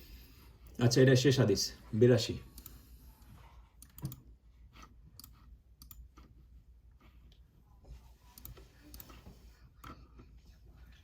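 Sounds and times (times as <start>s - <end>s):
faint clicks and light taps: 2.6s - 11.0s.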